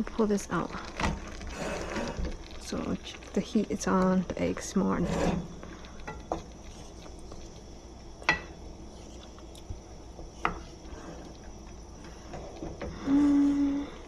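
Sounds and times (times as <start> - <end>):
low background hum: 0.0 - 14.0.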